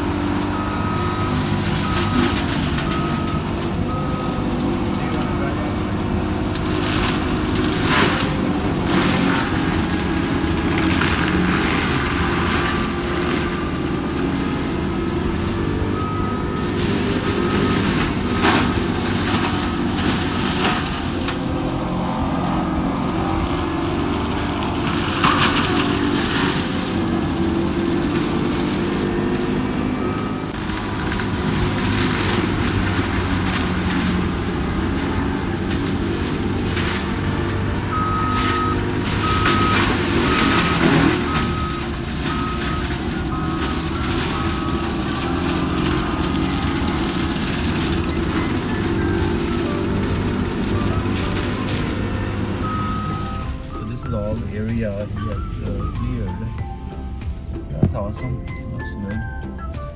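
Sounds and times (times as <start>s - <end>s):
engine running: 0.0s - 59.9s
short faint beeps: 15.6s - 20.9s.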